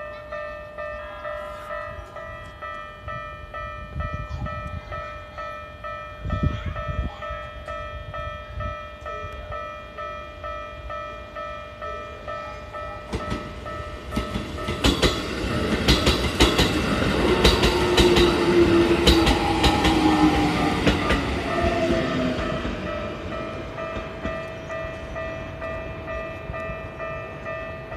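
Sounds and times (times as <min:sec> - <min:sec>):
crossing warning bell: 0:00.0 - 0:27.9
wheels clacking over rail joints: 0:13.1 - 0:25.7.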